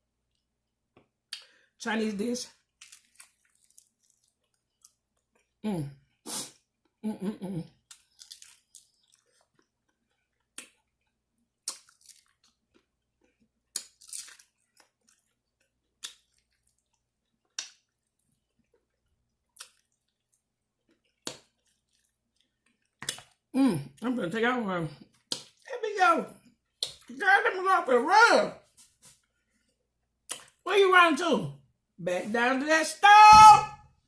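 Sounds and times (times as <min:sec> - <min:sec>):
chewing food: 0:02.5 - 0:07.0, 0:07.6 - 0:24.0
lip smacks: 0:23.0 - 0:23.4, 0:30.3 - 0:30.6.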